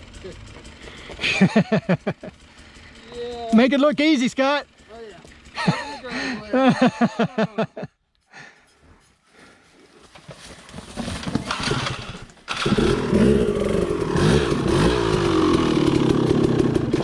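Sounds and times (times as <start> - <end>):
dirt bike engine revving: 0.0 - 7.7, 11.2 - 17.0.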